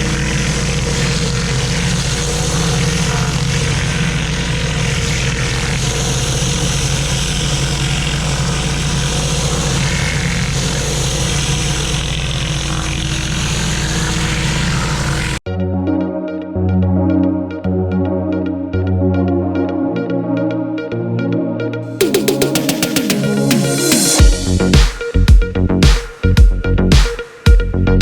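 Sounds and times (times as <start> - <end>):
high-pressure water jet hissing: 0.0 - 15.4
pressure washer engine running: 0.0 - 15.4.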